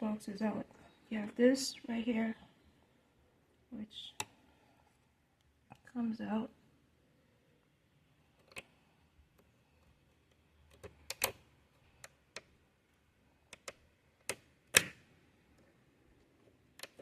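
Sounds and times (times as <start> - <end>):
plastic clicks and snaps: 10.2 - 12.5, 13.5 - 15.7, 16.7 - 17.0.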